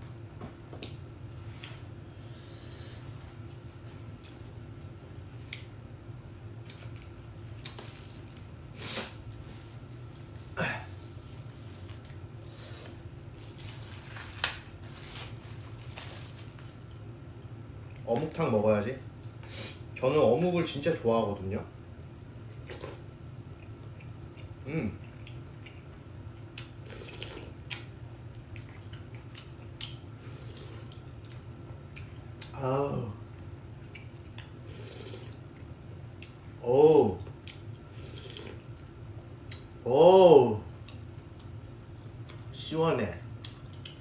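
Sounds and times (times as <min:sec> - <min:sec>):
steady low hum: 0:00.0 - 0:44.0
wet mouth and slurping sounds: 0:22.5 - 0:23.1, 0:26.8 - 0:27.9, 0:28.6 - 0:31.0, 0:34.6 - 0:35.4, 0:38.0 - 0:38.7
eating mouth noises: 0:26.8 - 0:27.9.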